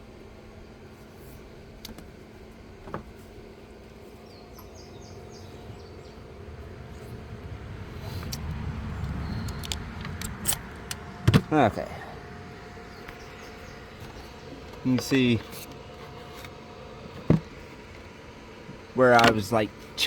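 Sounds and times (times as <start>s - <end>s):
faint bird chirps: 4.2s - 7.1s
low rumble: 5.0s - 14.0s
sharp clicks: 9.0s - 11.1s.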